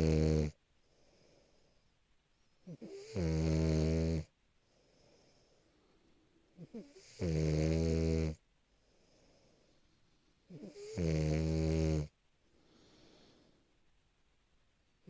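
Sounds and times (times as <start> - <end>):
dog snoring: 0.0 - 0.6, 2.6 - 4.3, 6.6 - 8.4, 10.5 - 12.1
faint dog breathing: 0.8 - 2.0, 4.6 - 7.4, 8.7 - 11.1, 12.4 - 13.8.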